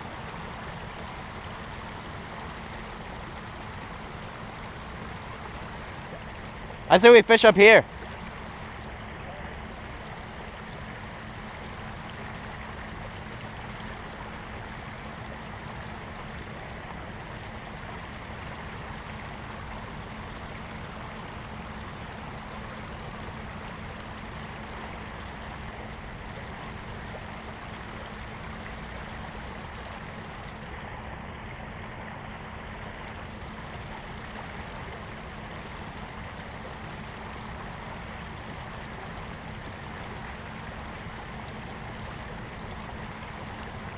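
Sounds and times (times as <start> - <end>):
stream flowing over rocks: 0.0 - 43.9.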